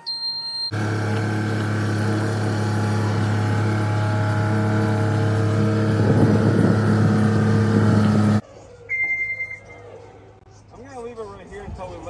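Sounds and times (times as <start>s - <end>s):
boom lift engine running: 0.7s - 8.4s.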